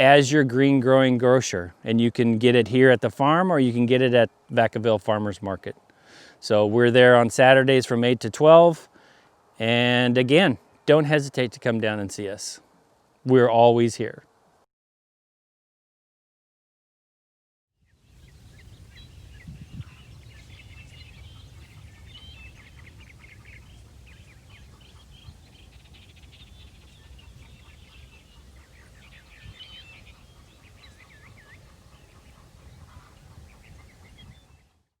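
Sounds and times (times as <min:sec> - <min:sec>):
birds chirping: 0:17.8 - 0:35.0.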